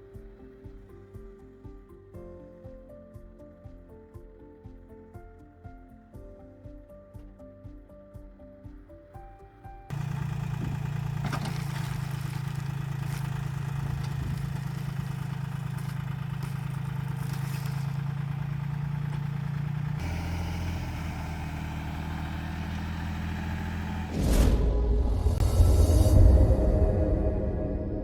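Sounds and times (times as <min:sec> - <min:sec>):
light metal clanks: 0:09.9 - 0:19.9
tractor engine running: 0:09.9 - 0:25.5.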